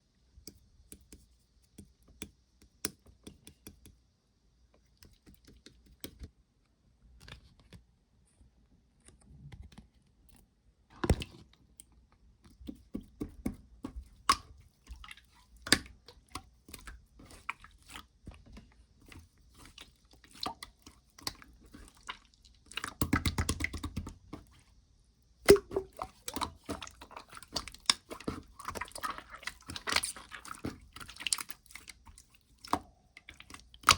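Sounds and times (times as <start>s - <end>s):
slime squelching by hand: 12.5s - 24.6s, 25.4s - 33.9s.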